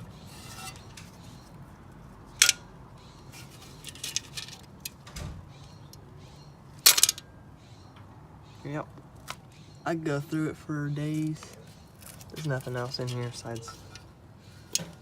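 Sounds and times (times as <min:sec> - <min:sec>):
metal engine parts clinking: 0:00.2 - 0:01.4, 0:02.3 - 0:02.7, 0:03.3 - 0:05.0, 0:06.8 - 0:07.3, 0:12.1 - 0:14.1.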